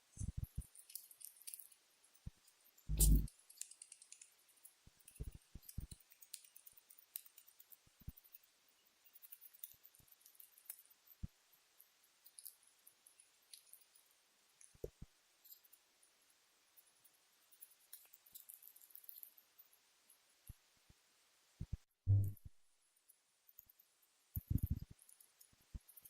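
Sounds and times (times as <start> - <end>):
rat grinding teeth: 0.4 - 11.2, 16.8 - 19.6.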